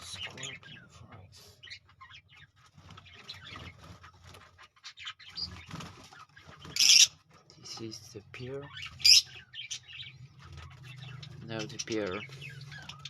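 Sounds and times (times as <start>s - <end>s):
lovebirds chirping: 0.0s - 13.0s.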